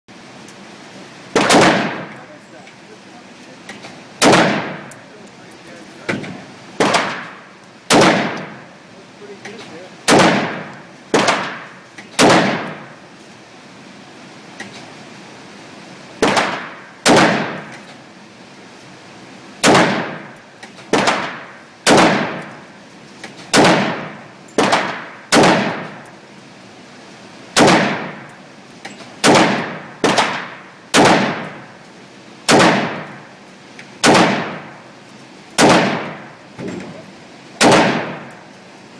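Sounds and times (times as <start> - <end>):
rifle shots: 1.3 - 2.2, 4.2 - 4.9, 6.8 - 8.6, 10.1 - 12.9, 16.2 - 17.7, 19.6 - 22.6, 23.5 - 26.0, 27.6 - 28.3, 29.2 - 31.7, 32.5 - 33.3, 34.0 - 34.8, 35.6 - 38.4.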